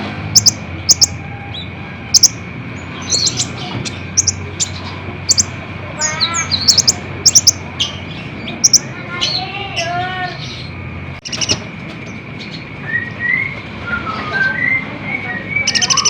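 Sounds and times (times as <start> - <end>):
bird singing high notes: 3.0 - 8.0, 12.8 - 16.0.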